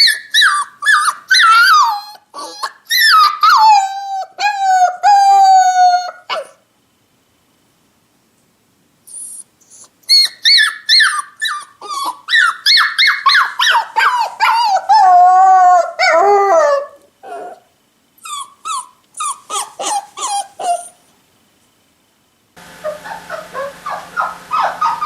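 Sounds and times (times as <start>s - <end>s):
puppy whimpering and howling: 0.0s - 6.6s, 9.1s - 21.0s, 22.8s - 25.0s.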